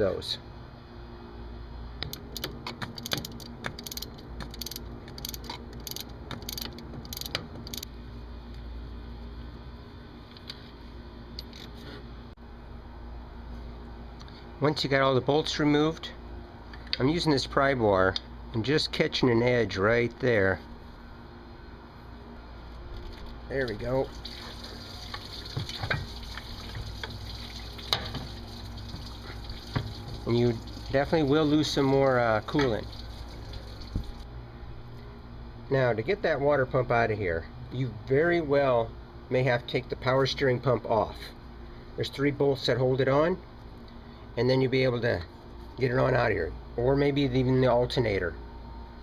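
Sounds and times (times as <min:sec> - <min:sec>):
hand ratchet clicking: 0:02.0 - 0:07.9
coolant trickling and splashing: 0:23.6 - 0:34.3.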